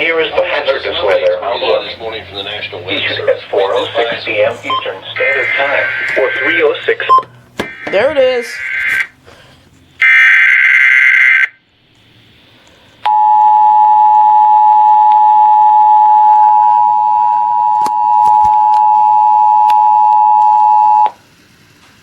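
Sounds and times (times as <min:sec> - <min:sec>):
two-tone alert signal: 0:13.1 - 0:21.1.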